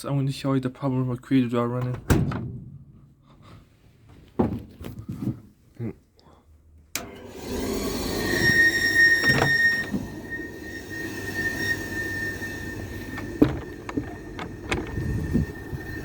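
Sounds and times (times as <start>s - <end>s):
appliance high-pitched squeal: 7.2s - 16.0s.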